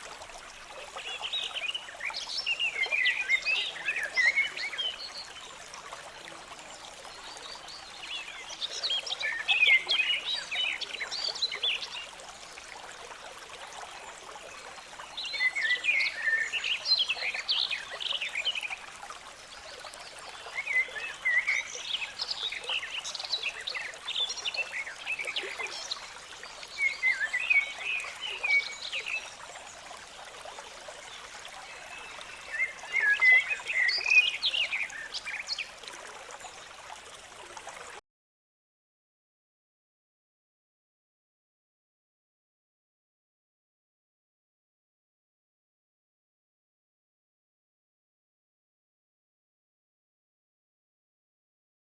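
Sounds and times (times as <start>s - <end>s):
small stream trickling: 0.0s - 38.0s.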